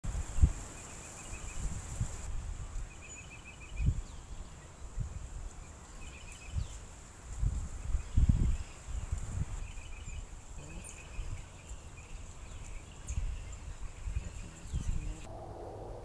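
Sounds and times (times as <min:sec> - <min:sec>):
insect whine: 0:15.1 - 0:16.0.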